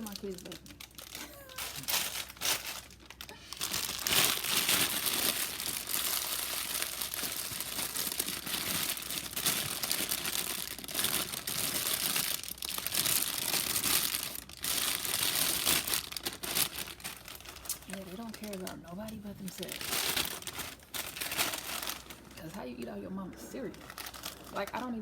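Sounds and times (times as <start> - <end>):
plastic bag crinkling: 0.0 - 25.0.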